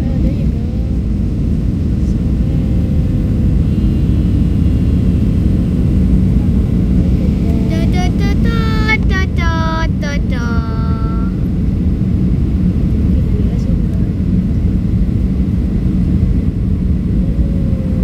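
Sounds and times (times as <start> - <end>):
airliner cabin roar: 0.0 - 18.0
person speaking: 7.2 - 11.4.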